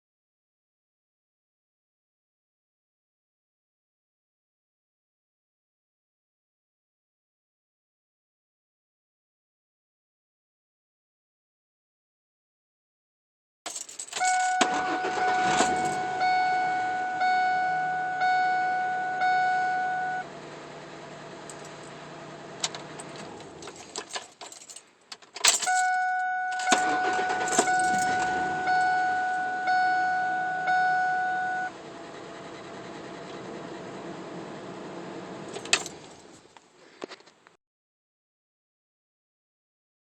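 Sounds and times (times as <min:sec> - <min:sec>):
keys jangling: 0:13.7 - 0:14.6, 0:21.5 - 0:21.9, 0:23.0 - 0:25.9, 0:27.4 - 0:28.2, 0:35.5 - 0:36.2
dashboard warning chime dinging: 0:14.0 - 0:20.3, 0:25.5 - 0:31.8.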